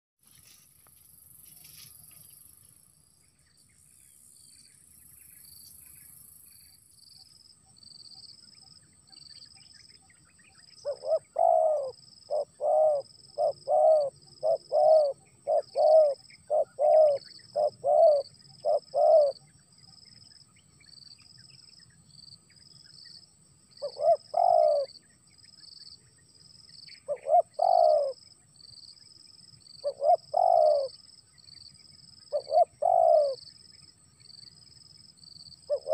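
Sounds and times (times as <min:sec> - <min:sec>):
dove cooing: 0:10.8 - 0:19.4, 0:23.8 - 0:25.0, 0:27.1 - 0:28.2, 0:29.8 - 0:30.9, 0:32.3 - 0:33.4, 0:35.7 - 0:35.9.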